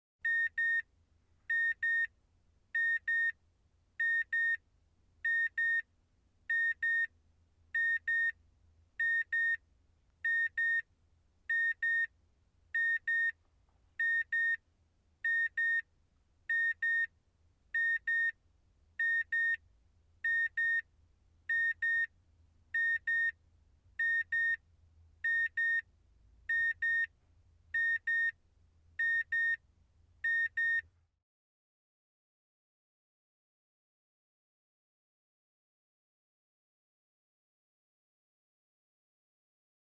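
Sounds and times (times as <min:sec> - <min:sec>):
car warning double beep: 0:00.2 - 0:00.8, 0:01.5 - 0:02.1, 0:02.8 - 0:03.4, 0:04.0 - 0:04.6, 0:05.3 - 0:05.8, 0:06.5 - 0:07.1, 0:07.8 - 0:08.4, 0:09.0 - 0:09.6, 0:10.2 - 0:10.8, 0:11.5 - 0:12.1, 0:12.8 - 0:13.4, 0:14.0 - 0:14.6, 0:15.2 - 0:15.8, 0:16.5 - 0:17.1, 0:17.8 - 0:18.4, 0:19.0 - 0:19.6, 0:20.2 - 0:20.8, 0:21.5 - 0:22.1, 0:22.8 - 0:23.4, 0:24.0 - 0:24.6, 0:25.2 - 0:25.8, 0:26.5 - 0:27.1, 0:27.8 - 0:28.4, 0:29.0 - 0:29.6, 0:30.2 - 0:30.8.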